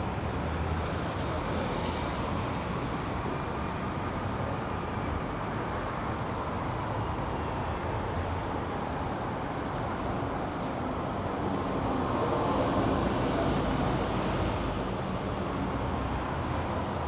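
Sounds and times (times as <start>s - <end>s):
passing vehicles: 0.0s - 17.0s.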